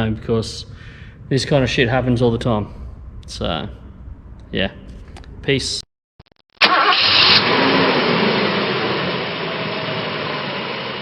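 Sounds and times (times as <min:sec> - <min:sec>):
car engine running: 0:06.9 - 0:11.0.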